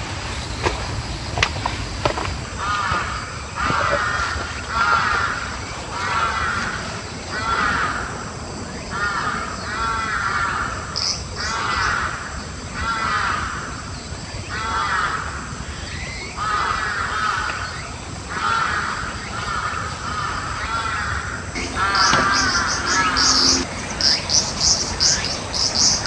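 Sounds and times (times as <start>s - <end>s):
crow cawing: 0.0s - 2.5s, 21.6s - 26.0s.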